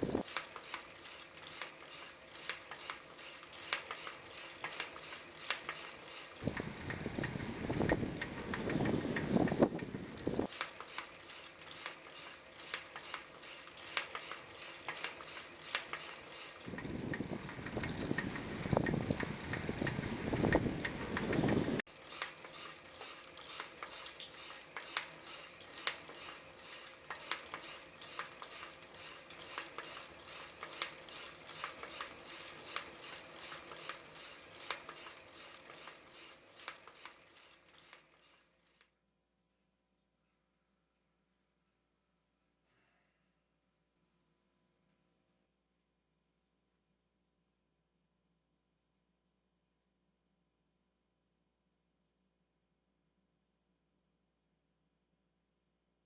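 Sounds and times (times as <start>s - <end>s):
bicycle freehub clinking: 0.0s - 38.8s.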